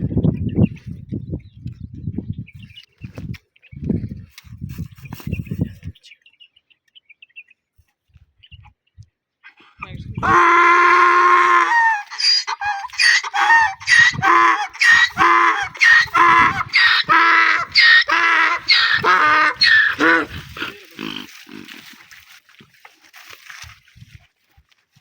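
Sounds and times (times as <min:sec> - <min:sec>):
donkey braying: 0:10.2 - 0:22.0.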